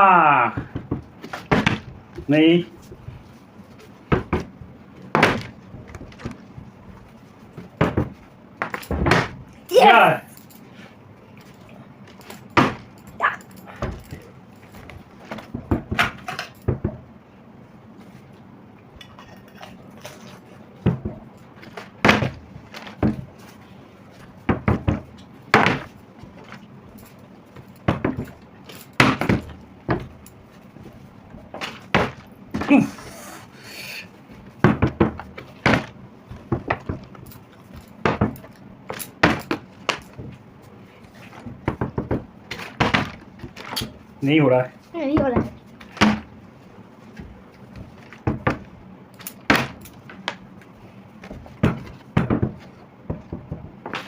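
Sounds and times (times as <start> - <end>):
bottle landing knocks and thuds: 0.5 - 2.0, 4.1 - 6.4, 7.6 - 9.4, 12.6 - 12.9, 20.8 - 23.3, 24.4 - 26.0, 27.8 - 28.4, 29.0 - 30.2, 31.6 - 32.8, 34.6 - 37.2, 38.0 - 40.4, 41.5 - 43.9, 45.2 - 46.4, 47.8 - 48.7, 49.4 - 49.9, 51.2 - 54.0.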